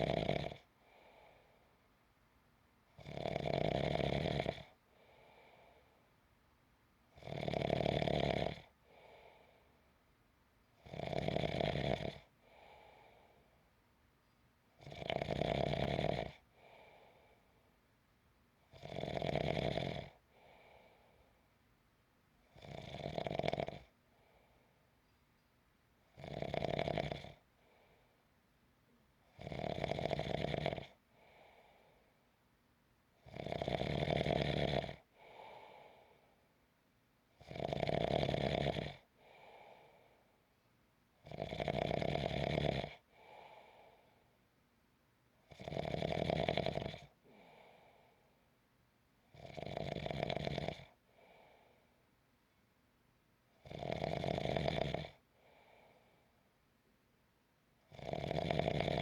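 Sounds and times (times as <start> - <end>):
person snoring: 0.0 - 0.7, 7.2 - 9.1, 10.8 - 12.3, 14.8 - 16.4, 18.8 - 20.2, 26.2 - 27.4, 29.4 - 31.0, 33.3 - 35.9, 45.6 - 47.5, 49.4 - 51.0, 53.6 - 55.2, 58.0 - 59.0
soft breath out: 0.8 - 1.9, 4.9 - 6.2, 8.8 - 10.0, 12.4 - 13.7, 16.5 - 17.8, 20.2 - 21.5, 27.5 - 28.3, 31.1 - 32.3, 35.1 - 36.5, 39.2 - 40.4, 43.1 - 44.4, 47.2 - 48.5, 51.0 - 52.0, 55.3 - 56.5.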